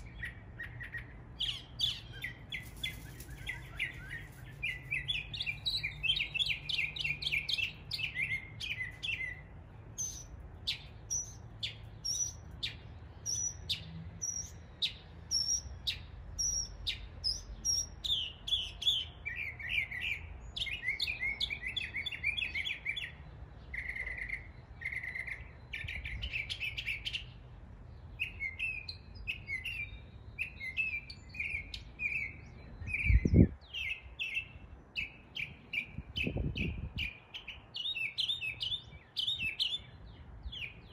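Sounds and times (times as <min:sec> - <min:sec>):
mockingbird singing mimicked calls: 0:00.0 - 0:27.4.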